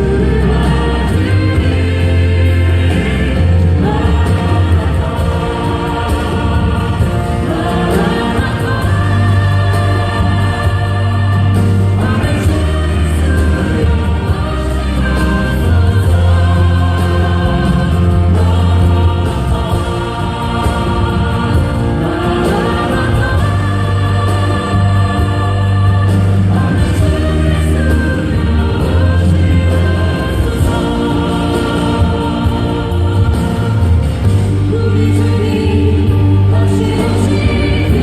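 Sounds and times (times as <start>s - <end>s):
choir singing a hymn: 0.0s - 38.0s
instrumental accompaniment: 0.0s - 38.0s.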